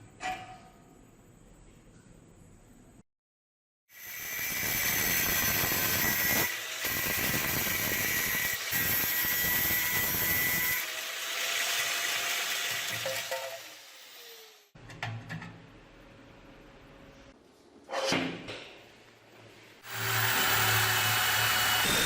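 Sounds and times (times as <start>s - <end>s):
power tool whining: 19.9s - 22.0s.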